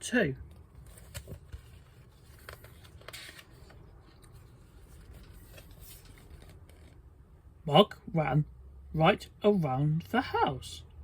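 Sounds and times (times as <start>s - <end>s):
light clicks of book handling: 0.5s - 7.0s
page turning: 0.8s - 7.0s
paper rustling: 0.8s - 7.0s.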